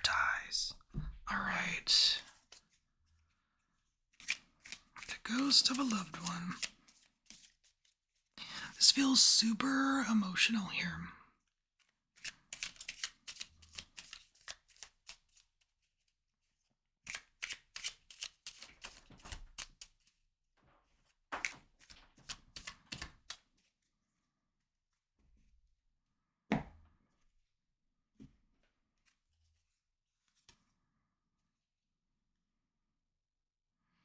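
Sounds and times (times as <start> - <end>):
cards being shuffled: 4.1 - 7.9, 11.8 - 15.8, 17.1 - 20.1, 21.4 - 23.4.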